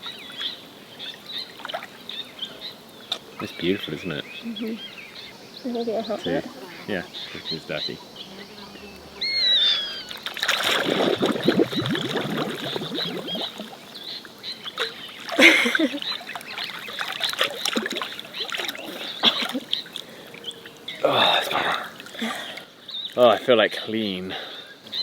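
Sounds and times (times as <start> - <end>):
water splashing and sloshing: 0.0 - 2.0, 10.0 - 23.2.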